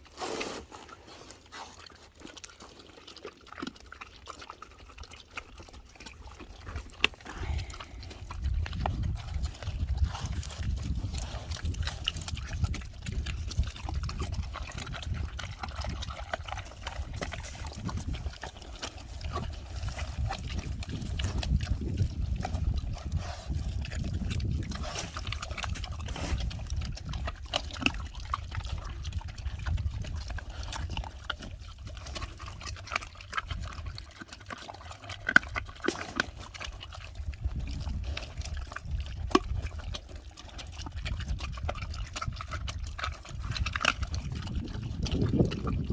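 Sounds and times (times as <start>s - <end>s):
pigs chewing noisily: 0.0s - 45.9s
steady low rumble: 7.2s - 34.1s, 40.7s - 45.9s.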